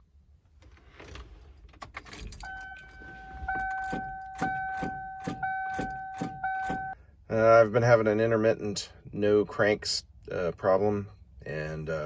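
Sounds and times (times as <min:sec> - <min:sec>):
keys jangling: 0:01.5 - 0:07.0
vehicle warning chime: 0:02.2 - 0:07.0.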